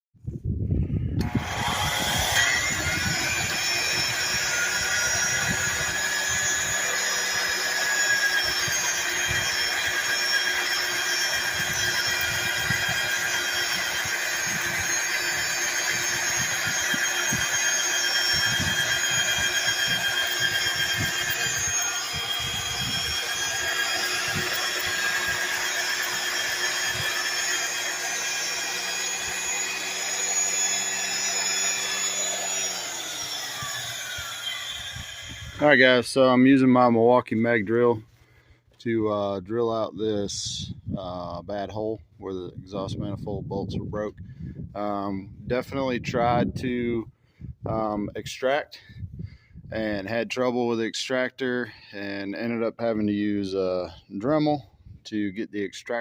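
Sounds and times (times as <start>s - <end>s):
magnetic drill motor whine: 1.2s - 36.7s.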